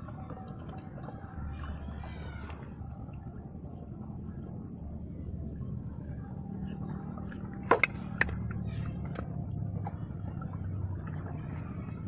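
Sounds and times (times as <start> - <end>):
steady low hum: 0.0 - 12.0.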